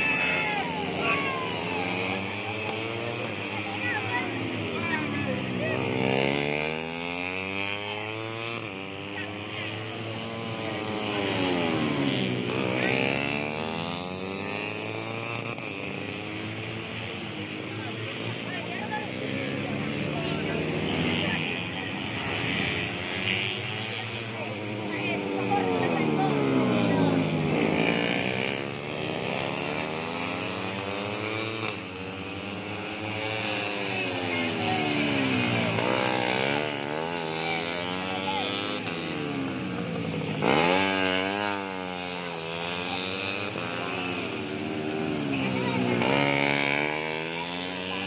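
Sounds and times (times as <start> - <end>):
motorcycles racing at high revs: 0.0 - 48.0.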